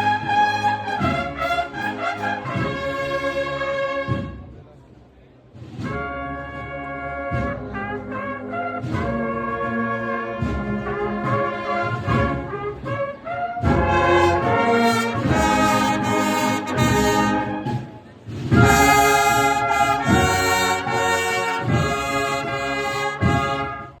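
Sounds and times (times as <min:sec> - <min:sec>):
drums playing march: 0:00.0 - 0:04.6, 0:05.6 - 0:24.0
cornets holding chords: 0:08.4 - 0:24.0.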